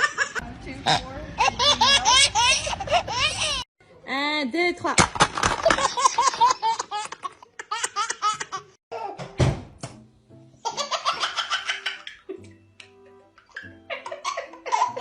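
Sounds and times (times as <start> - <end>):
baby giggling: 1.4 - 3.6, 10.6 - 12.5, 13.4 - 15.0
music: 9.1 - 15.0.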